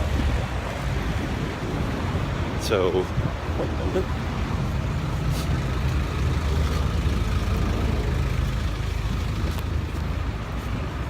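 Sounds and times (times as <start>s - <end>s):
motor vehicle rumbling past: 3.2s - 11.0s.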